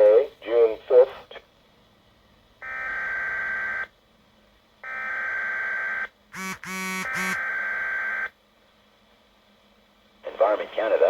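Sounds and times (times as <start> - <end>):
short stuttering tones: 6.4 - 7.4
buzzy modem-like data bursts: 6.4 - 8.2.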